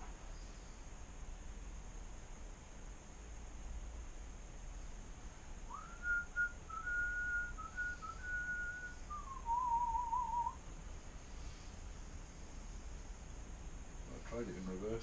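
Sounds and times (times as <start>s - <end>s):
man whistling a tune: 5.7s - 10.6s.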